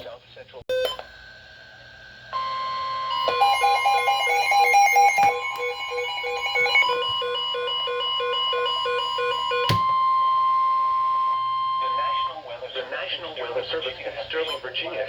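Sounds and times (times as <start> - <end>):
steady electronic alert tone: 2.4 - 10.1
electronic alarm beeping rapidly: 2.4 - 12.4.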